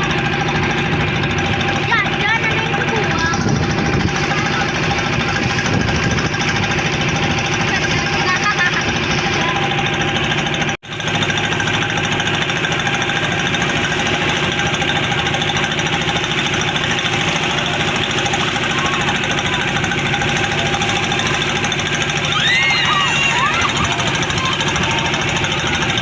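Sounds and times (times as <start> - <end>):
boat engine knocking: 0.0 - 26.0.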